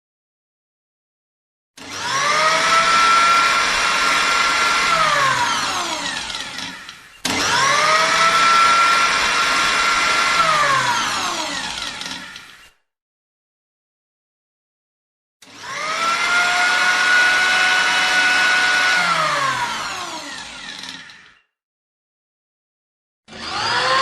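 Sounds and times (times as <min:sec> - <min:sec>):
blender motor whining: 0:01.8 - 0:12.8, 0:15.4 - 0:21.5, 0:23.3 - 0:24.0.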